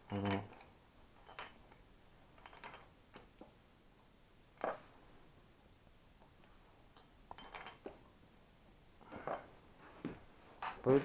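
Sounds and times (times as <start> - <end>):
metal tools clinking: 7.0 - 7.9.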